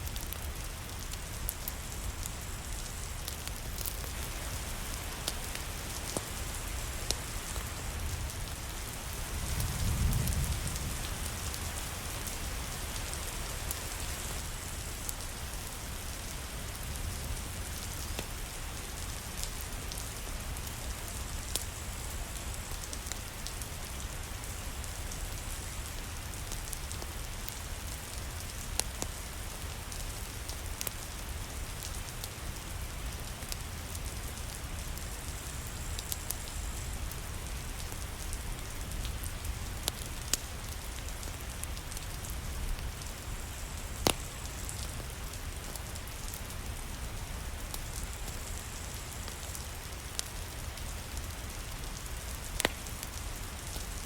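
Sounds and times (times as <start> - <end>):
wood fire crackling: 0.0 - 54.0
rain hissing: 0.1 - 54.0.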